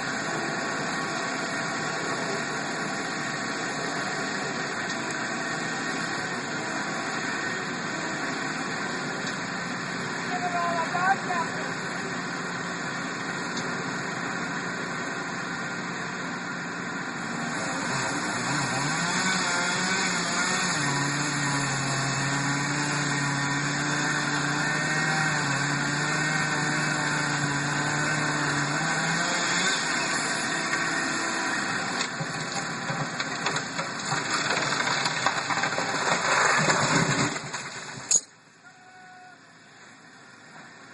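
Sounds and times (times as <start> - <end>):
engine running: 0.0 - 38.6
knocks and cracks: 32.0 - 38.1.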